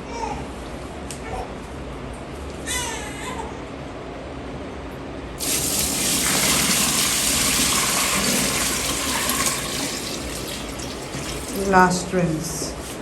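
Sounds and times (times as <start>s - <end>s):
water gushing into washing machine: 5.4s - 12.7s.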